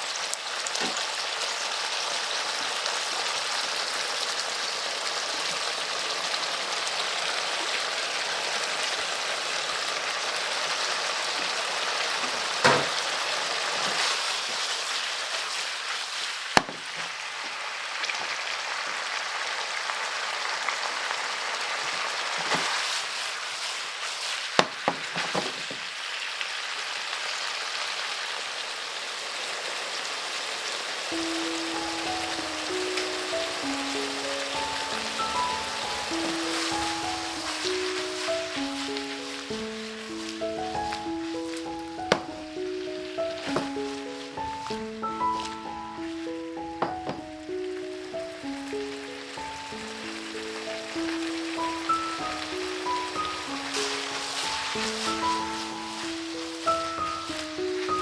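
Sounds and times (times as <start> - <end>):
food sizzling in a frying pan: 0.0 - 58.0.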